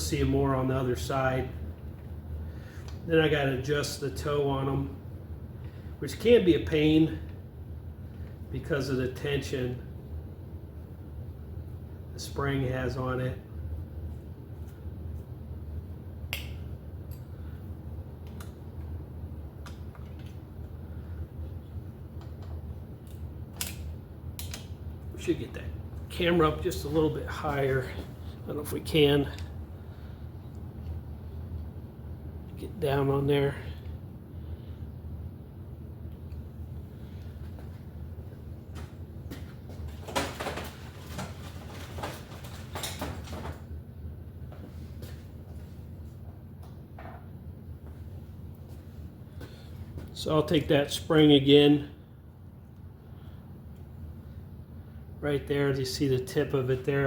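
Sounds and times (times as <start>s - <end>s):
low steady hum: 0.0s - 57.0s
tools clicking and tapping: 22.2s - 24.7s.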